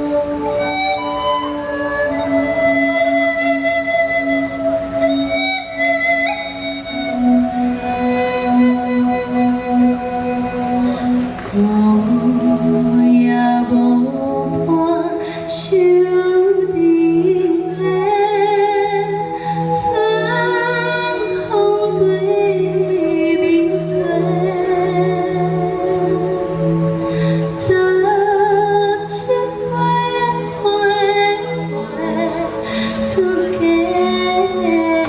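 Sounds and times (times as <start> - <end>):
person singing wavering vocals: 0.0 - 35.0.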